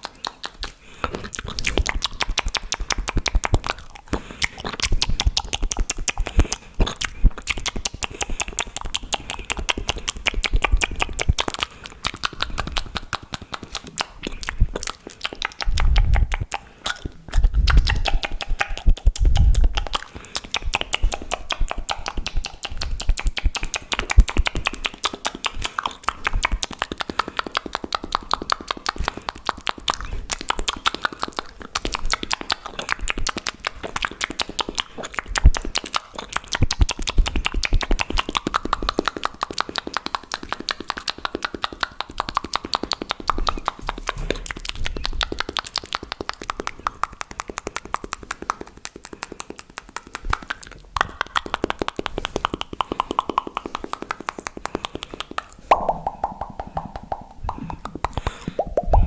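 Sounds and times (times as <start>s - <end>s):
low mouth bursts: 0.0s - 59.0s
tongue clicks and lip pops: 0.0s - 59.0s.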